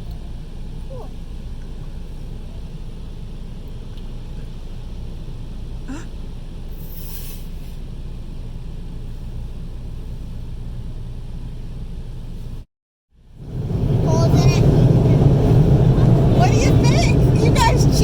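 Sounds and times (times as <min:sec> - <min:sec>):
car wash rumble inside cabin: 0:00.0 - 0:18.0
short hiss: 0:06.7 - 0:07.9.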